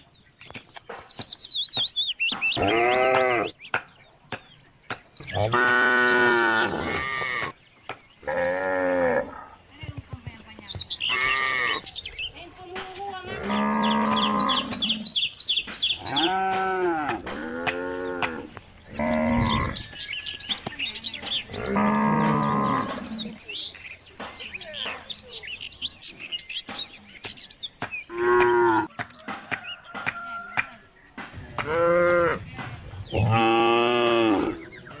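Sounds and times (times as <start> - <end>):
birds chirping: 0.0 - 35.0
cows mooing: 2.6 - 3.5, 5.4 - 7.6, 8.2 - 9.6, 13.3 - 15.1, 16.0 - 19.9, 21.5 - 23.4, 28.1 - 28.9, 31.6 - 32.4, 33.1 - 34.7.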